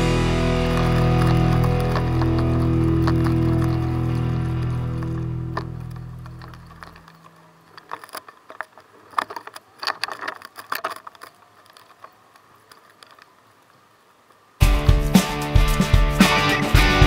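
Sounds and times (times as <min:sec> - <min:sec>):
music: 0:00.0 - 0:06.5, 0:14.6 - 0:17.0
small clicks and light knocks: 0:00.8 - 0:14.4.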